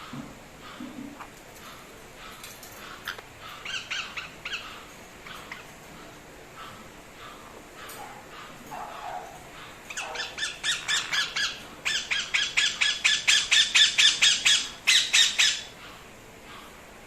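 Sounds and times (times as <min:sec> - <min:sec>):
parakeet squawking: 0:03.0 - 0:05.7, 0:06.6 - 0:16.0.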